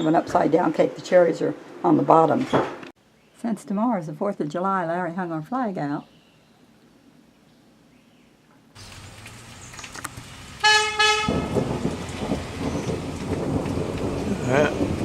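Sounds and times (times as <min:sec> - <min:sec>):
vehicle horn beeping: 0:10.6 - 0:11.6.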